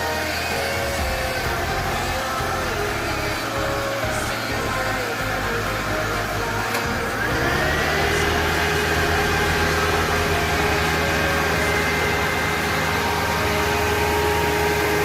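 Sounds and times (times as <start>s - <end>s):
car engine running: 0.0s - 15.0s
electric cooling fan whining: 0.0s - 15.0s.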